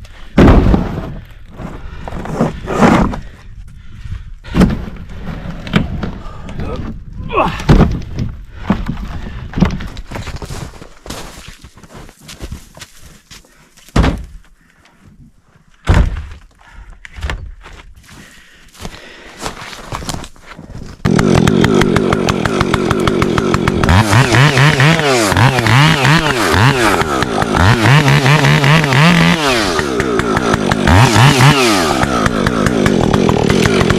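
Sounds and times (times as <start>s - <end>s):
knocks and thuds: 0.4s - 1.2s, 4.5s - 6.2s, 7.5s - 10.5s, 13.9s - 14.4s, 15.8s - 16.4s
chainsaw running: 21.0s - 33.9s.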